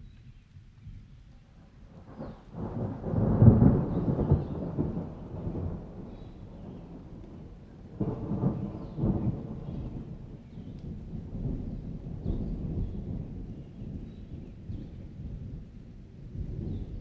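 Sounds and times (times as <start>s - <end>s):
heavy rain: 2.0s - 14.0s
thunder rumbling: 2.0s - 17.0s.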